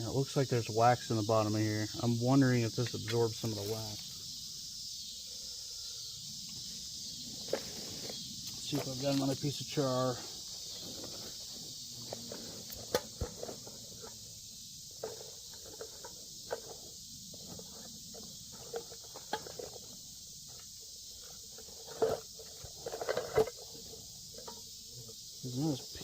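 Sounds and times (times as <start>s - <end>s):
insects hissing: 0.0s - 26.0s.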